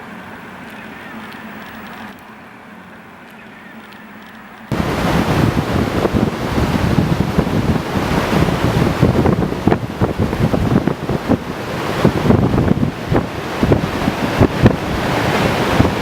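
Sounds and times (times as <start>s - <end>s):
wind buffeting microphone: 4.7s - 16.0s.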